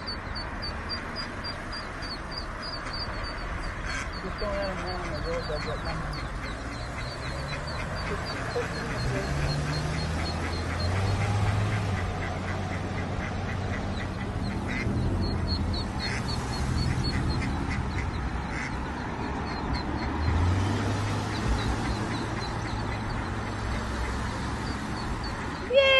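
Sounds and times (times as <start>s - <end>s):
ducklings peeping: 0.0s - 25.9s
duck quacking: 0.9s - 20.4s.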